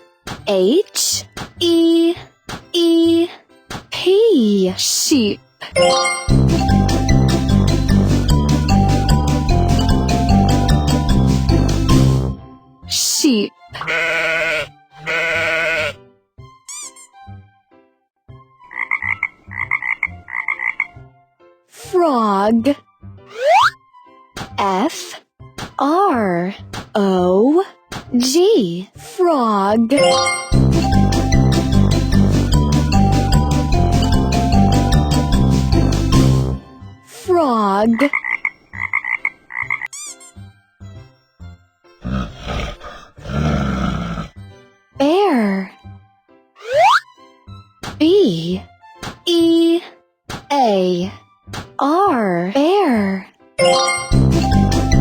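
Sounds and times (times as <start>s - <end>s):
plinking children's music: 0.0s - 42.2s, 44.4s - 55.0s
sheep bleating: 13.8s - 16.0s
frog croaking: 18.6s - 21.1s, 37.9s - 39.9s
bear roar: 42.0s - 44.4s.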